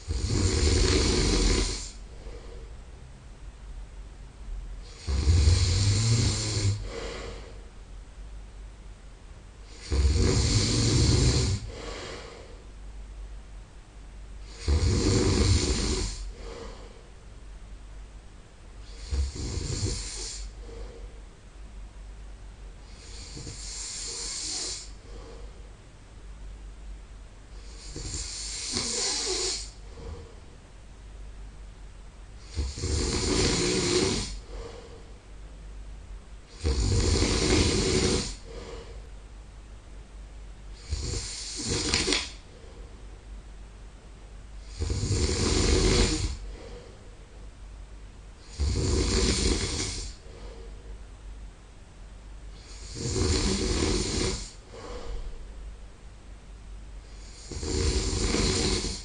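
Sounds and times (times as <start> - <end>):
man snoring: 0.0 - 2.0, 4.8 - 7.6, 9.6 - 12.6, 14.4 - 16.8, 18.8 - 21.0, 22.8 - 25.3, 27.6 - 30.3, 32.4 - 35.0, 36.5 - 39.0, 40.8 - 42.4, 44.6 - 46.8, 48.4 - 50.5, 52.6 - 55.3, 57.1 - 59.0
quiet breathing: 0.0 - 3.1, 4.5 - 7.9, 9.6 - 13.1, 14.3 - 17.6, 18.7 - 22.1, 22.7 - 26.6, 27.4 - 30.8, 32.4 - 35.7, 36.4 - 39.9, 40.5 - 43.6, 44.5 - 51.2, 52.4 - 56.0, 56.9 - 59.0.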